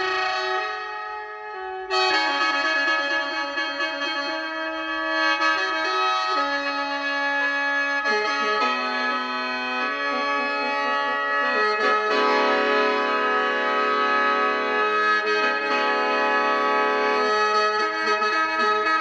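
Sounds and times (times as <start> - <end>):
mouth organ playing chords: 8.6 - 17.4.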